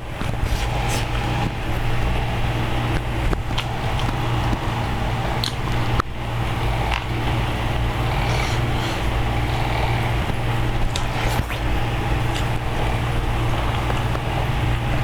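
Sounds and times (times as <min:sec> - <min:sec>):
eating clicks: 0:03.0 - 0:14.4.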